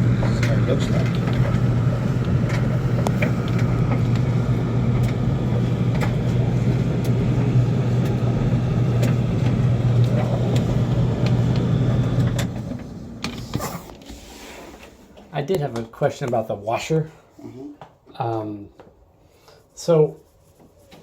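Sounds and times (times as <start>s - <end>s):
low machine hum: 0.0s - 14.1s.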